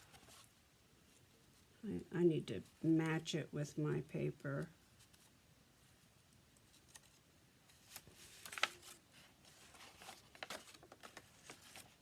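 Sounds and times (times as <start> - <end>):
paper rustling and tapping: 6.8 - 9.0, 9.7 - 12.0.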